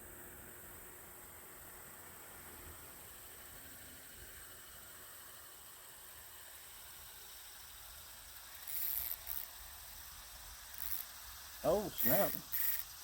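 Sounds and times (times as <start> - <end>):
faint steady hiss: 0.0 - 13.0
short bursts of high hissing: 8.3 - 13.0.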